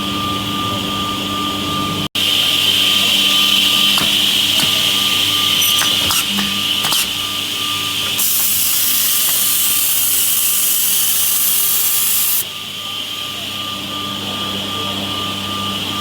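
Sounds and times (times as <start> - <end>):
loud hiss: 2.2 - 12.4
machine humming: 2.2 - 12.4.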